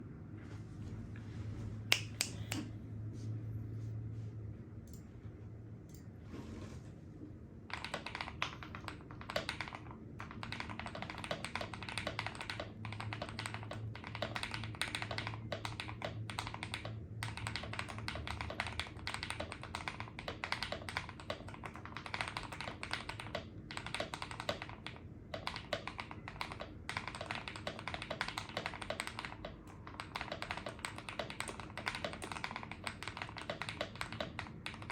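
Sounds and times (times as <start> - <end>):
mechanical keyboard typing: 7.7 - 34.9.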